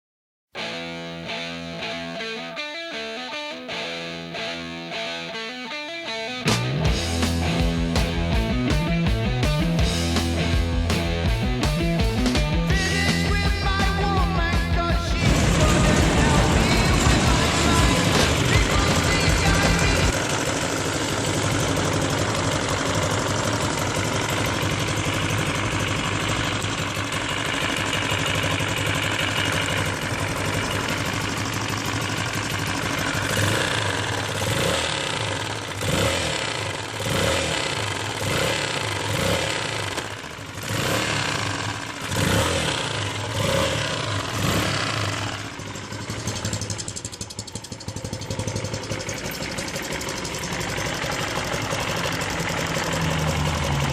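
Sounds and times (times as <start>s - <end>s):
motorcycle engine revving: 6.4s - 53.9s.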